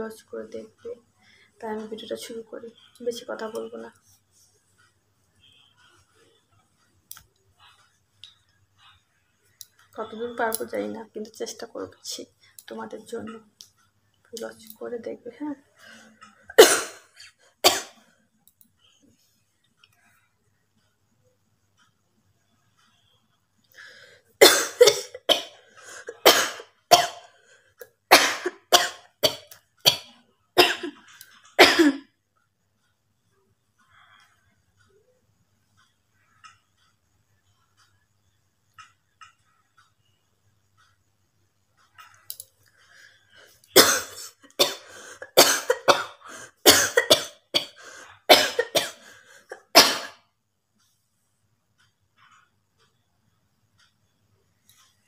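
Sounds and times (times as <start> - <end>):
faint breaths: 1.0 - 1.6, 15.6 - 16.6, 23.6 - 24.4, 27.3 - 27.8, 42.6 - 43.7, 44.8 - 45.3, 47.8 - 48.3, 49.0 - 49.5
woman coughing: 16.5 - 18.0, 24.4 - 27.3, 28.1 - 31.0, 31.6 - 32.1, 43.8 - 50.2.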